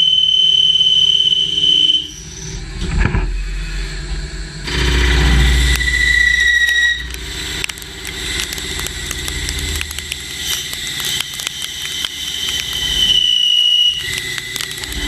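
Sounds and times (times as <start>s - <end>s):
machinery whining and humming: 0.0s - 15.0s
sharp clicks and ticks: 6.6s - 15.0s.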